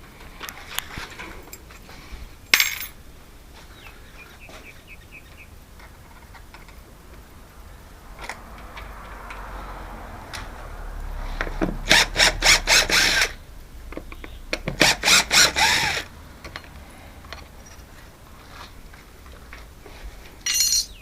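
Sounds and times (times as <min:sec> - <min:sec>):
metallic clink with ring: 0:20.4 - 0:21.0.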